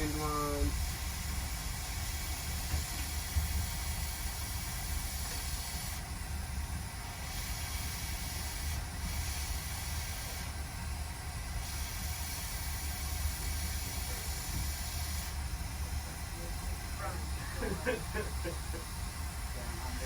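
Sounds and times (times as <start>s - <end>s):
hot-air station hiss: 0.0s - 20.0s.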